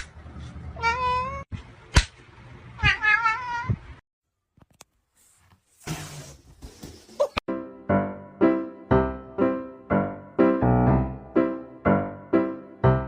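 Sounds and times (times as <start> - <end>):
cat meowing: 0.8 - 1.5, 2.8 - 3.8.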